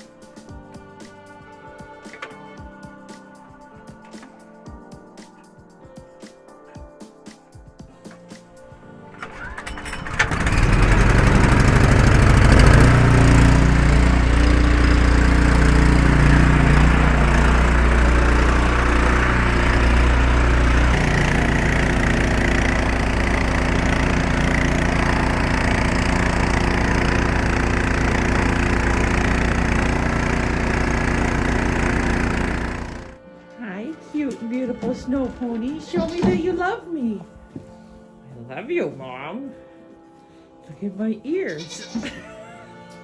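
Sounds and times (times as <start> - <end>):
engine running: 9.2 - 33.2.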